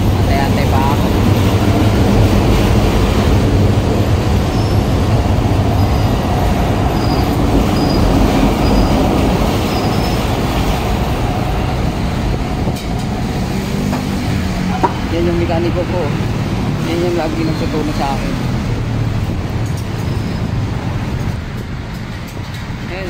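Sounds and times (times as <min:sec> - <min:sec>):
train rumbling past: 0:00.0 - 0:23.0
high wheel squeals: 0:04.2 - 0:10.4, 0:19.9 - 0:20.6.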